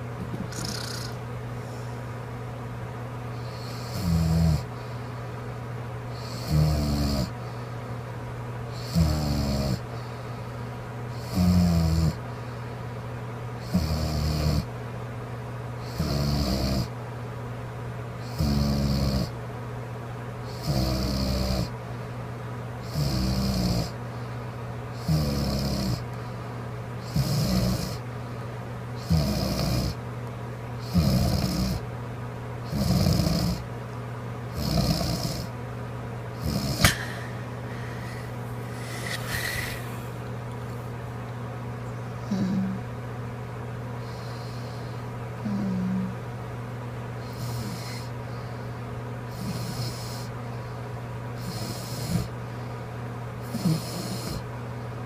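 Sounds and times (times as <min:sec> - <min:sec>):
steady low hum: 0:00.0 - 0:55.0
woman snoring: 0:00.5 - 0:01.2, 0:03.5 - 0:04.7, 0:06.2 - 0:07.3, 0:08.8 - 0:09.8, 0:11.2 - 0:12.2, 0:13.7 - 0:14.7, 0:15.9 - 0:16.9, 0:18.3 - 0:19.3, 0:20.6 - 0:21.7, 0:22.9 - 0:24.0, 0:25.0 - 0:26.0, 0:27.1 - 0:28.0, 0:29.0 - 0:30.0, 0:30.8 - 0:31.8, 0:32.7 - 0:33.6, 0:34.6 - 0:35.5, 0:36.4 - 0:40.0, 0:42.2 - 0:42.9, 0:45.4 - 0:46.2, 0:51.4 - 0:52.3, 0:53.5 - 0:54.4.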